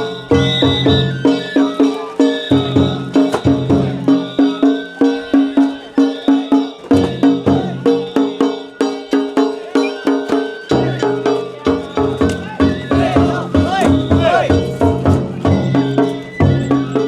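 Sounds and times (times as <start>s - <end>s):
drums and gongs beating fast: 0.0s - 17.0s.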